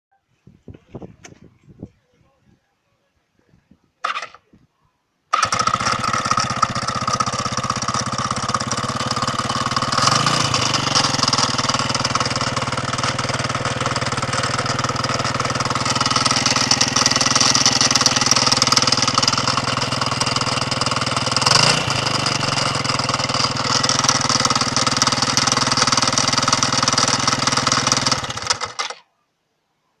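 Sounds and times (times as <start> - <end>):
scooter engine revving: 4.0 - 4.4, 5.3 - 29.0
scooter engine running with abnormal noise: 5.3 - 29.0.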